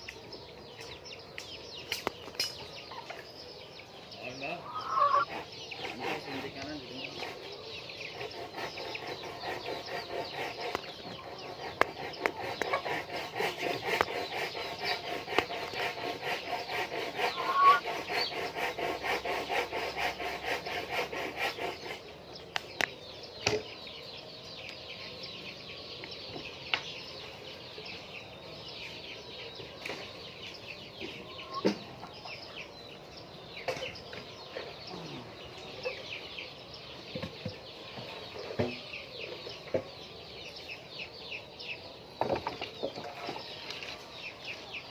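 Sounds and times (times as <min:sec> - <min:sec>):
hens clucking: 0:02.1 - 0:22.8, 0:30.4 - 0:38.9.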